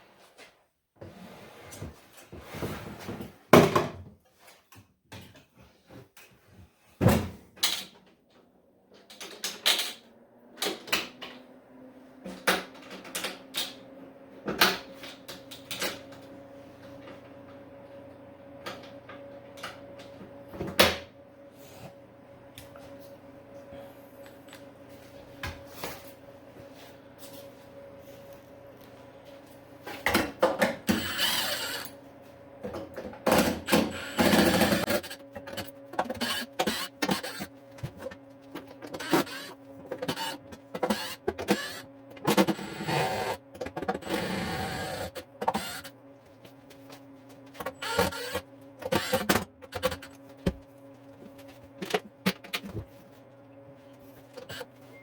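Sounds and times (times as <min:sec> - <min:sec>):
power drill running: 0:30.9 - 0:32.0, 0:33.3 - 0:37.5, 0:38.8 - 0:45.9, 0:47.7 - 0:50.1.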